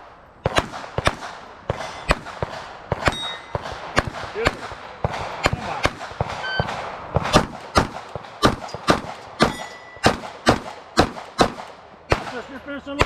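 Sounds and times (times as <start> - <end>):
pistol shots: 0.0 - 13.0
short electronic beep: 6.4 - 6.7.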